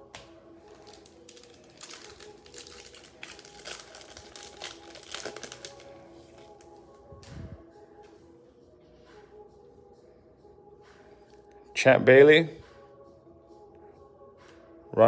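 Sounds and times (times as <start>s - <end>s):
card pack wrapper crinkling: 0.1s - 6.7s.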